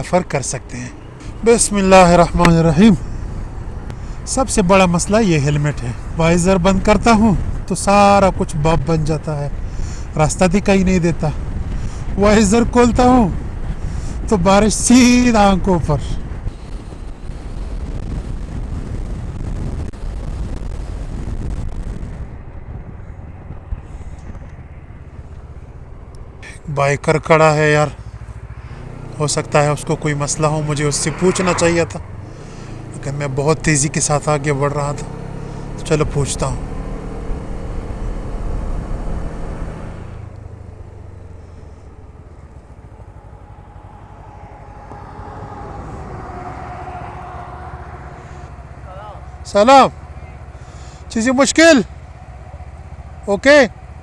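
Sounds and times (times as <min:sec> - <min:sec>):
motorcycle engine drone: 0:00.0 - 0:54.0
wind rushing past microphone: 0:00.6 - 0:26.5, 0:27.7 - 0:33.1, 0:35.0 - 0:49.4.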